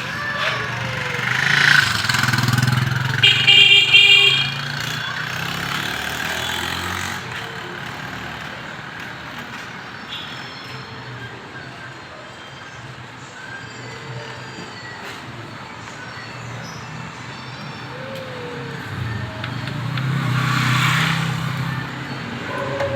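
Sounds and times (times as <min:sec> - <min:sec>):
passing vehicle engines: 0:00.0 - 0:12.2, 0:12.8 - 0:22.9
short car horn: 0:03.2 - 0:04.6.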